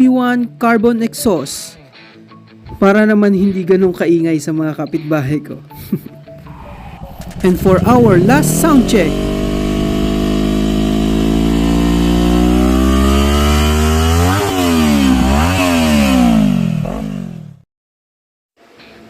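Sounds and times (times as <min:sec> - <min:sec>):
motorcycle engine revving: 0:06.5 - 0:17.6.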